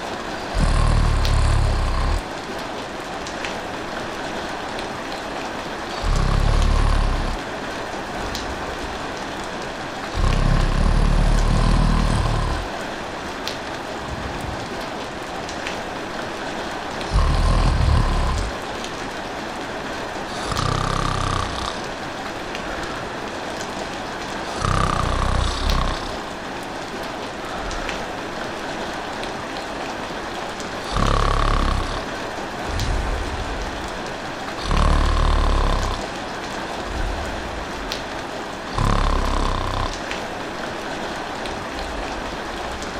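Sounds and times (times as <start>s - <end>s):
person snoring: 0.0s - 2.3s, 5.9s - 7.4s, 10.1s - 12.8s, 17.0s - 18.6s, 20.3s - 21.9s, 24.4s - 26.3s, 30.8s - 36.2s, 36.8s - 37.8s, 38.6s - 40.2s
steady rain falling: 0.0s - 42.9s.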